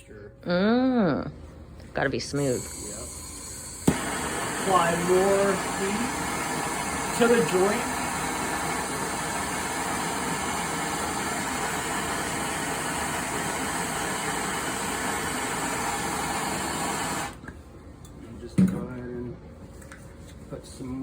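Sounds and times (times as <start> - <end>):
soldering torch hissing: 2.4 - 17.4.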